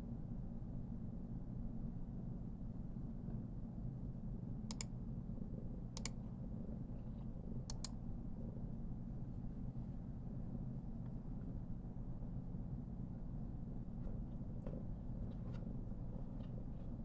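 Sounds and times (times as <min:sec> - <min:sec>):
cat purring: 0:05.3 - 0:05.8, 0:06.4 - 0:07.6, 0:08.2 - 0:08.9, 0:13.9 - 0:17.0.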